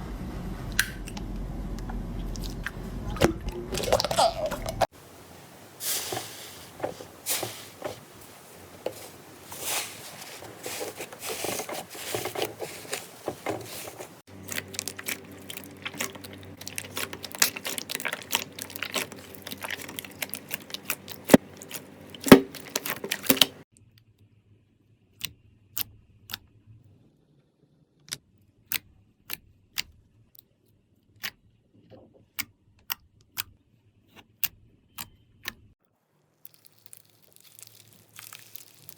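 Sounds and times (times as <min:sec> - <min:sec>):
slime crackling and popping: 0:14.3 - 0:23.6, 0:36.4 - 0:38.9.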